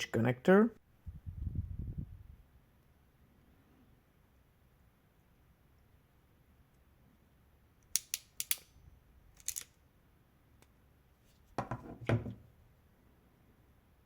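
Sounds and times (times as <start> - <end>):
ratchet pliers clicking: 7.9 - 8.7, 9.4 - 9.7.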